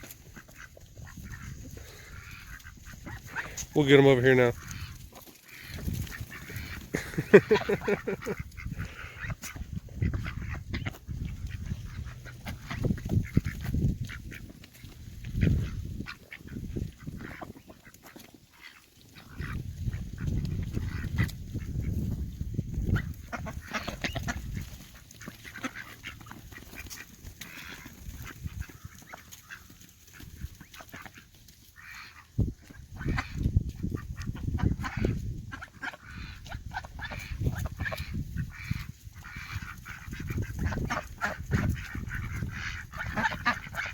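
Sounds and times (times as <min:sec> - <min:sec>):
ducks quacking and honking: 0:00.0 - 0:43.9.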